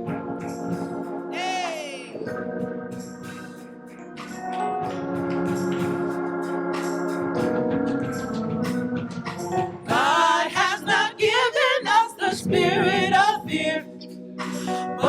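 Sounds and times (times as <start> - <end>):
organ chord: 0.0 - 15.0
person singing with vibrato: 1.4 - 2.2, 9.9 - 15.0.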